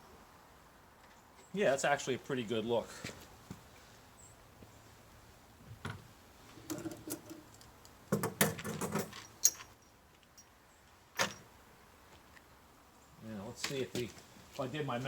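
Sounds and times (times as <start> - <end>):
hands handling hardware and wood: 5.8 - 10.5.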